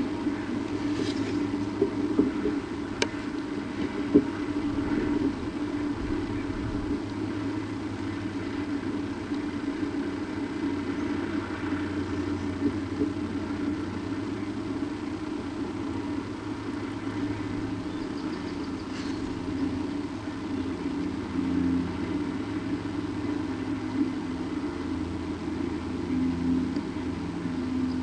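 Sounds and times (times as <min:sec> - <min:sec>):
steady low hum: 0:00.0 - 0:28.0
faint ticks: 0:00.2 - 0:05.4, 0:08.9 - 0:10.0, 0:26.5 - 0:26.9.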